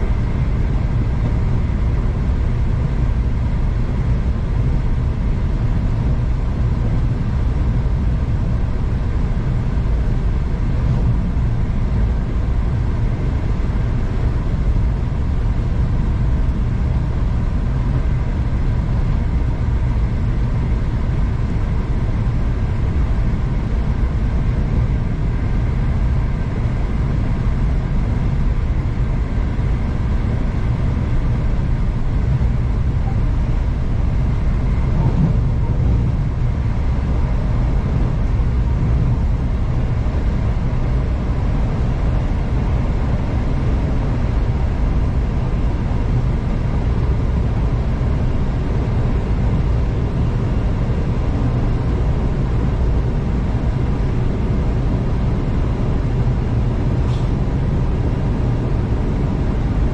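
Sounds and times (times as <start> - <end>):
faint steady whines: 0.0 - 59.9
train wheels rumbling: 32.5 - 38.0.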